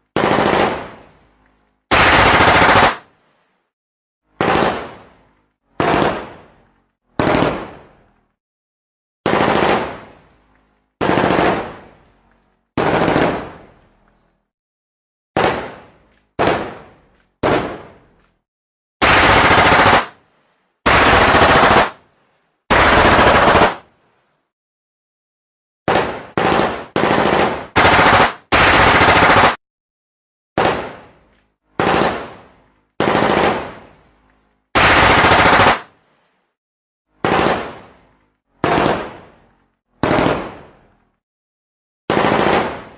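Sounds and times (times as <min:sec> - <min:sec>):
automatic gunfire bursts: 0:00.2 - 0:01.0, 0:01.9 - 0:03.0, 0:07.2 - 0:07.7, 0:09.2 - 0:10.0, 0:11.0 - 0:11.7, 0:12.8 - 0:13.6, 0:19.0 - 0:20.2, 0:20.9 - 0:22.0, 0:22.7 - 0:23.8, 0:25.9 - 0:29.6, 0:31.8 - 0:32.3, 0:33.0 - 0:33.8, 0:34.8 - 0:35.9, 0:37.2 - 0:37.8, 0:38.6 - 0:39.1, 0:40.0 - 0:40.6, 0:42.1 - 0:42.8.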